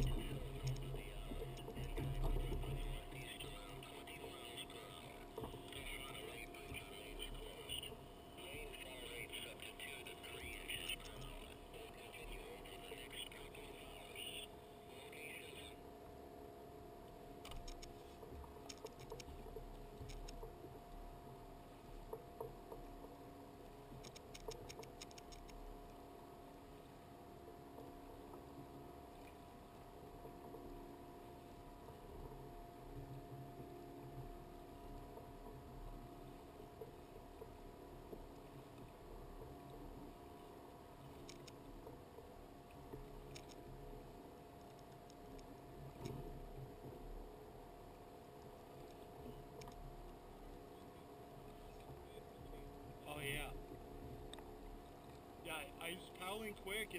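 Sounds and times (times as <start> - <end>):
steady low hum: 0.0 - 56.9
faint small clicks and taps: 17.1 - 20.7, 41.0 - 43.8, 44.6 - 47.0, 48.4 - 50.2.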